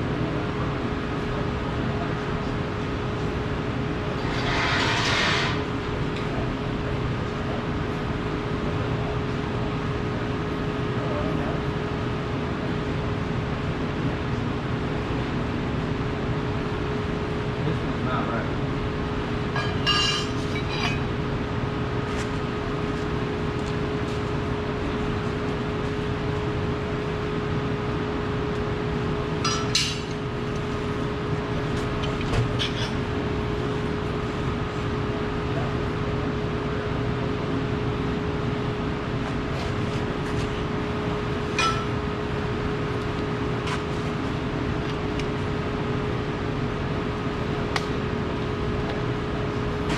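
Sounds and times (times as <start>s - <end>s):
shop machinery humming: 2.8s - 8.1s, 16.7s - 49.9s
machinery drone: 4.2s - 5.8s.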